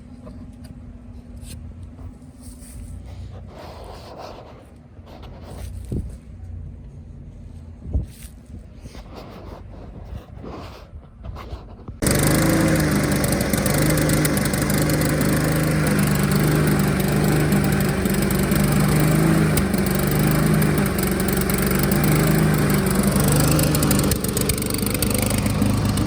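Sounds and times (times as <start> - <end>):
lawn mower engine running: 12.0 - 26.0.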